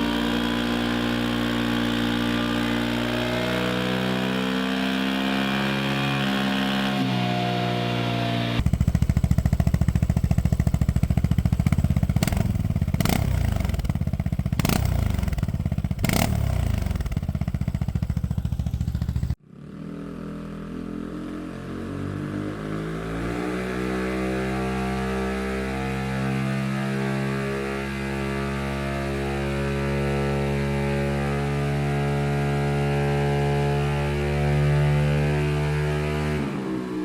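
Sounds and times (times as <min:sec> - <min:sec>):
scooter engine revving: 0:00.0 - 0:37.0
scooter engine idling: 0:08.1 - 0:19.4.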